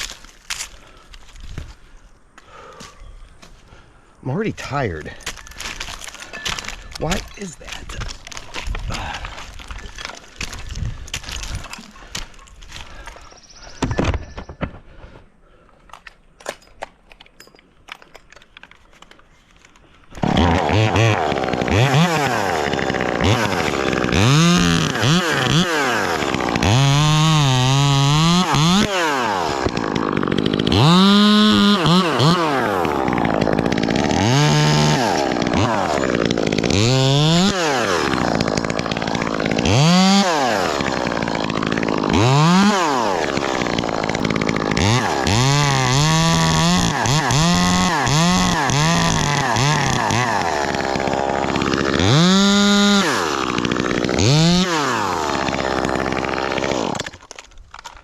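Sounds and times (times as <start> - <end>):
chainsaw revving: 20.1 - 57.3.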